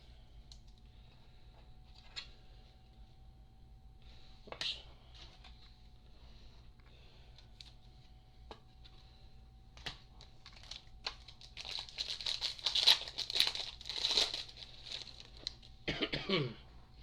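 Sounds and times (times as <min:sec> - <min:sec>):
wrapper tearing and crinkling: 0:10.4 - 0:15.7.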